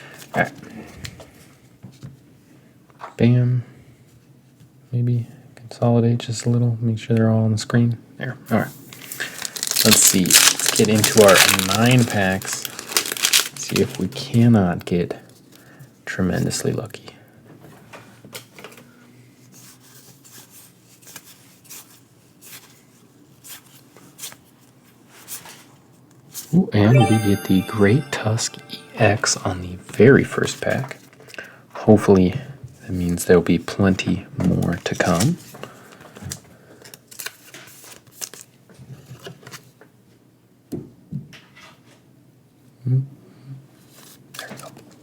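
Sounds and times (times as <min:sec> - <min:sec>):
rustling trading cards: 0:09.0 - 0:14.1
brief low sounds: 0:26.8 - 0:29.6.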